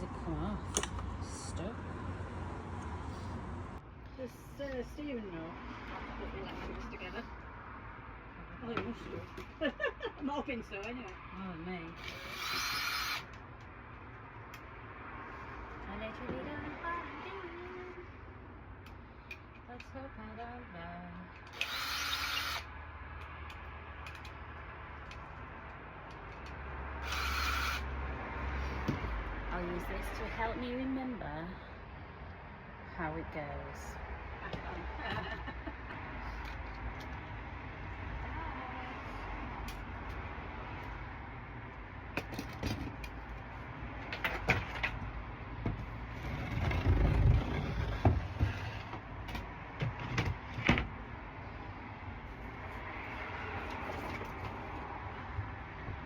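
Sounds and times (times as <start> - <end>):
power drill running: 11.9 - 13.4, 21.4 - 22.7, 27.0 - 27.9
clicks and knocks of tools: 23.2 - 26.6.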